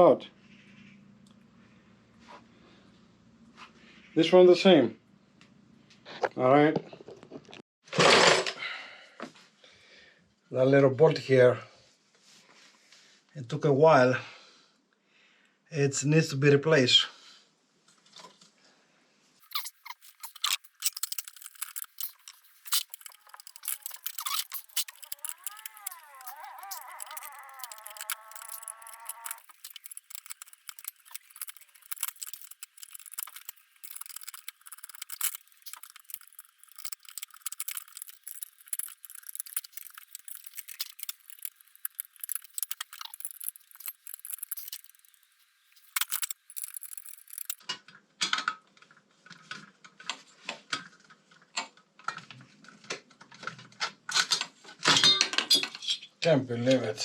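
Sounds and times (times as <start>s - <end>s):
metal tools clicking and rattling: 19.4s - 47.6s, 54.2s - 56.1s
wavering squeak: 19.5s - 47.6s.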